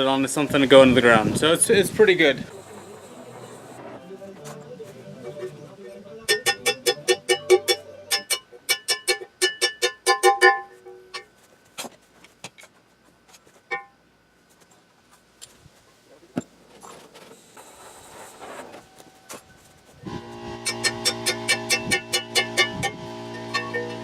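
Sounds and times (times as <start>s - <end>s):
high hiss: 0.2s - 4.9s
hammer ringing on steel: 6.3s - 11.0s.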